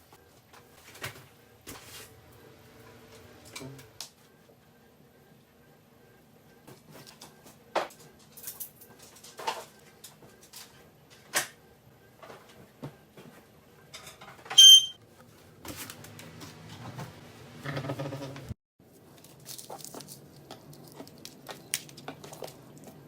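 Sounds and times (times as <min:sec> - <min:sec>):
high-pitched squeak: 0:14.6 - 0:15.0.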